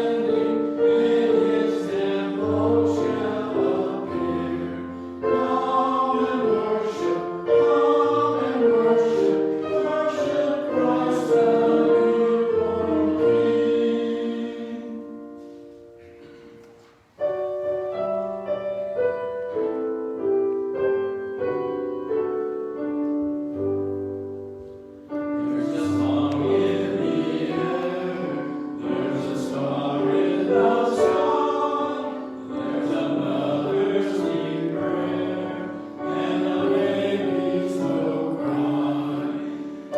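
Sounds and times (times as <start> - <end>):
group singing a hymn: 0.0 - 15.7, 25.2 - 39.9.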